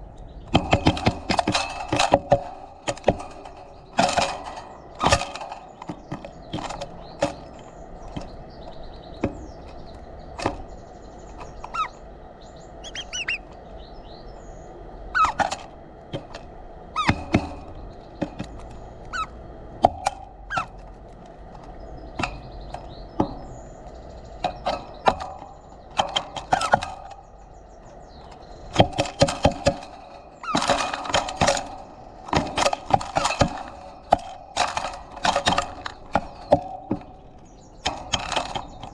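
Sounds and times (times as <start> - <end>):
birds pecking seed: 0.0 - 38.9
bird chirps: 2.7 - 15.6, 16.9 - 19.4, 20.2 - 20.8, 21.6 - 30.9.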